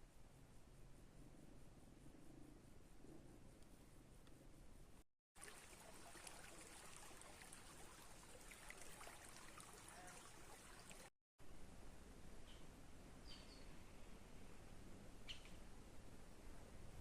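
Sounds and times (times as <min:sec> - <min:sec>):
small ticks: 0:00.0 - 0:05.0
stream water flowing: 0:05.4 - 0:11.1.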